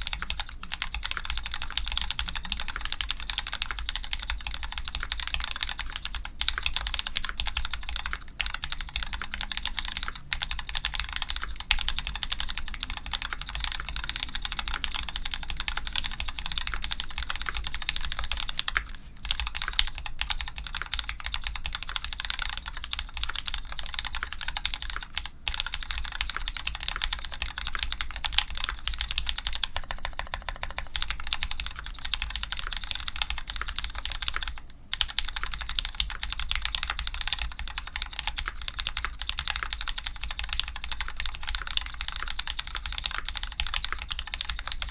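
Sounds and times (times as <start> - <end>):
mechanical keyboard typing: 0.0 - 44.9.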